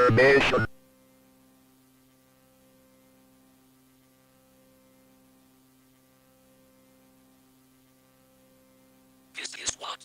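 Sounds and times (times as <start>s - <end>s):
faint electrical hum: 0.0s - 10.0s.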